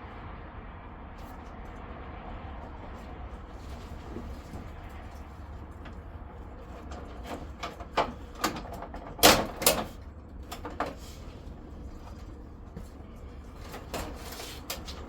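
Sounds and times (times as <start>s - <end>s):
clicks and knocks of tools: 6.8s - 11.0s.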